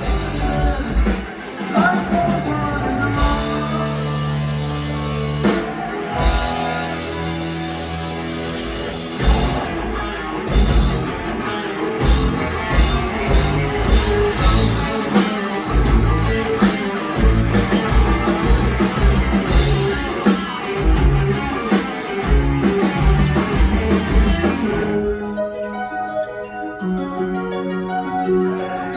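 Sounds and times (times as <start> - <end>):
drum kit with cymbal hits: 0.0 - 11.2, 12.0 - 25.2
electric guitars: 0.0 - 28.9
bell-like keyboard notes: 23.9 - 28.9.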